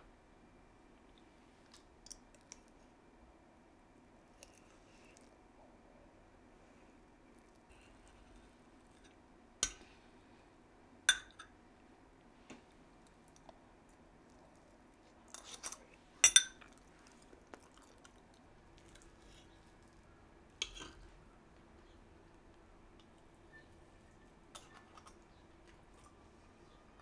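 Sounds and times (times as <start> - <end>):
dishes and cutlery clinking: 15.3 - 16.7, 20.6 - 21.0.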